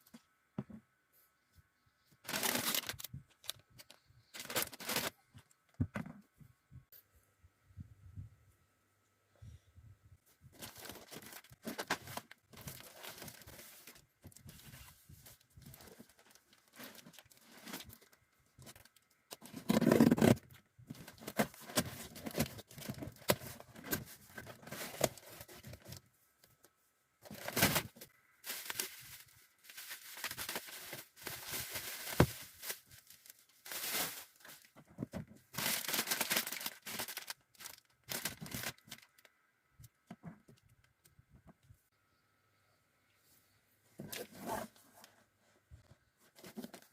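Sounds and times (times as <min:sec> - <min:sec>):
packaging crinkling and tearing: 0:02.2 - 0:05.2, 0:10.6 - 0:14.7, 0:15.6 - 0:26.0, 0:27.2 - 0:34.7, 0:35.5 - 0:39.3.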